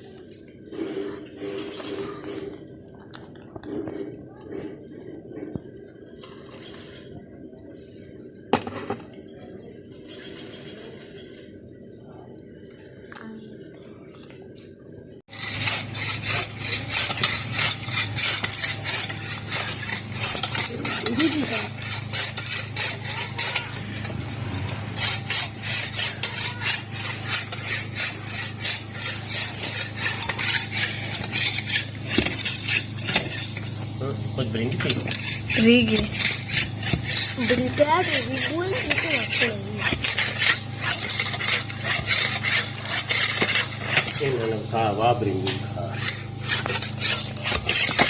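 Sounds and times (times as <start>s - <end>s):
background hum and hiss: 0.0s - 48.0s
hand scraping on metal: 45.4s - 48.0s.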